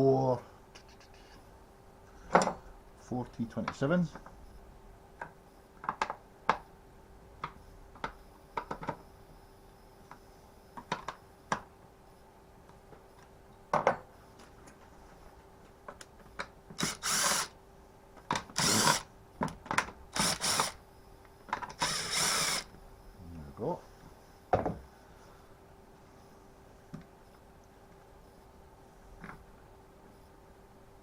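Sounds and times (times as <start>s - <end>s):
power driver spinning screws: 16.8s - 17.5s, 18.6s - 19.1s, 20.2s - 20.8s, 21.8s - 22.7s.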